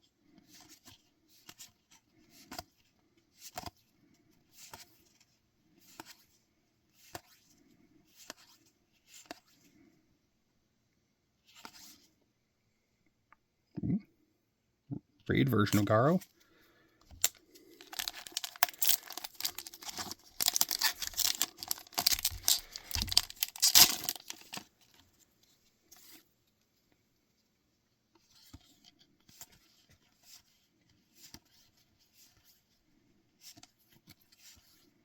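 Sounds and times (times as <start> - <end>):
cards rustling: 15.6 - 16.5, 17.1 - 25.1
foil wrapper crinkling: 17.2 - 25.0.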